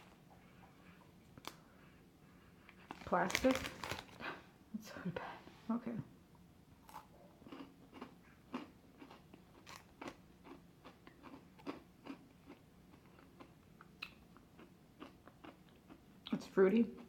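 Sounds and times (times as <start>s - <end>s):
person chewing crunchy wafer: 6.8s - 16.1s.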